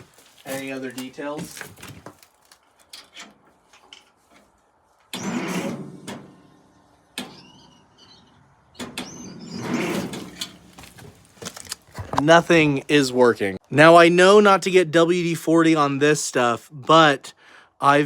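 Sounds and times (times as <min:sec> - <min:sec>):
tractor starter cranking engine: 0:05.1 - 0:06.6.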